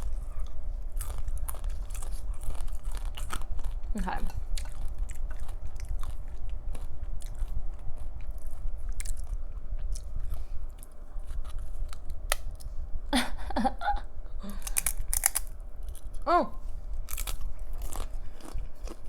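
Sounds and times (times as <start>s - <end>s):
chewing crunchy chips: 0.0s - 12.7s, 14.5s - 19.0s.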